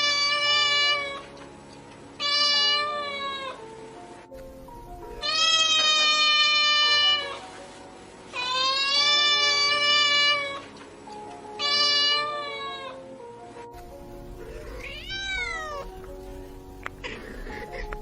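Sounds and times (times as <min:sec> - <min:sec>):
cat meowing: 0:00.0 - 0:01.3, 0:02.2 - 0:03.6, 0:05.2 - 0:07.5, 0:08.3 - 0:10.7, 0:11.6 - 0:13.0, 0:14.3 - 0:18.0
faint background music: 0:00.0 - 0:18.0.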